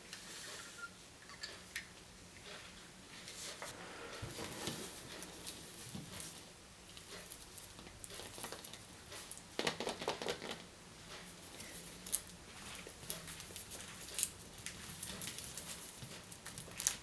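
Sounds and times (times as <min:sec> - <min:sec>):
plastic and foil wrappers crinkling: 0:04.3 - 0:10.7, 0:11.4 - 0:17.0.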